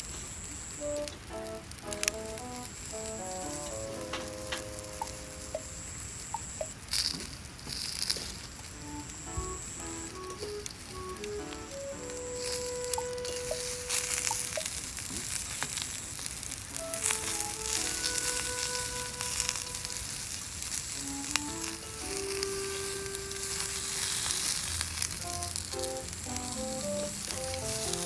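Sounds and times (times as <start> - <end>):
food sizzling over campfire: 0.3 - 28.0
slow background music: 0.8 - 5.9, 8.8 - 14.6, 16.8 - 20.2, 21.0 - 24.3, 25.2 - 28.0
sharp popping: 0.8 - 7.3.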